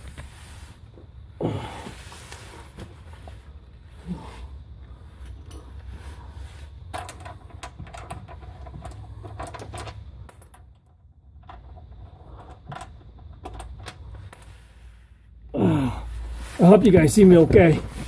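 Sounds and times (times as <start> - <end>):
metallic clinks of bolts and tools: 12.4 - 14.6.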